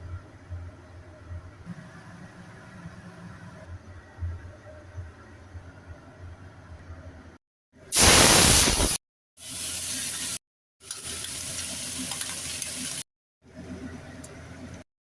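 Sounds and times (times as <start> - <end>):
food sizzling in a hot pan: 8.0 - 13.0.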